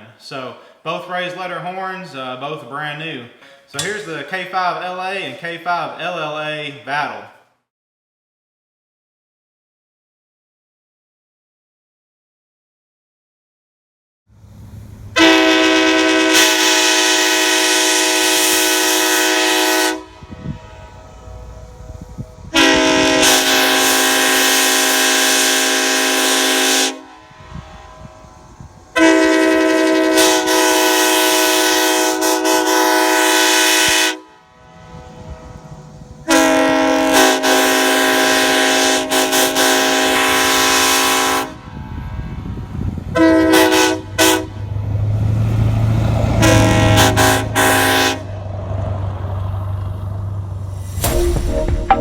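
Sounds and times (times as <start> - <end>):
train horn chord blasts: 15.1 - 44.8, 46.4 - 48.4, 50.0 - 52.0.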